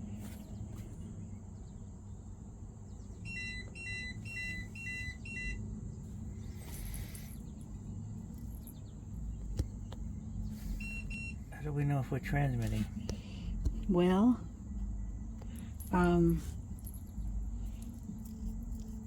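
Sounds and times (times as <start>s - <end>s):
low steady hum: 0.0s - 19.0s
two-tone electronic beeps: 3.3s - 5.6s, 10.8s - 11.5s.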